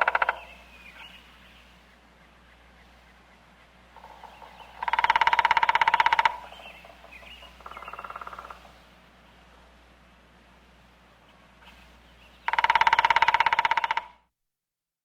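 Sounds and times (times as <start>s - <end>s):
faint bird chirps: 0.0s - 9.0s
woodpecker drumming: 0.0s - 9.0s, 11.6s - 14.2s.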